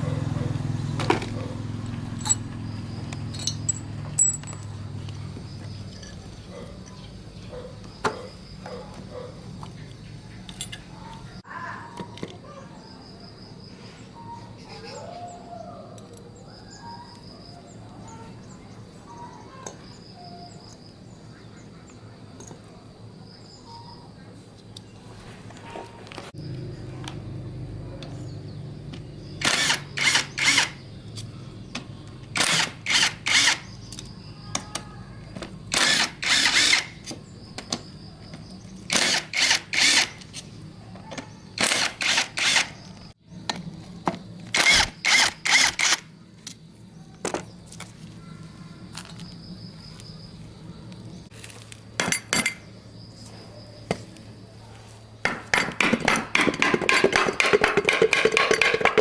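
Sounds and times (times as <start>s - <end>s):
handheld power tool bursts: 29.4s - 30.8s, 32.3s - 33.7s, 35.7s - 37.1s, 38.8s - 40.4s, 41.6s - 42.8s, 44.5s - 46.1s.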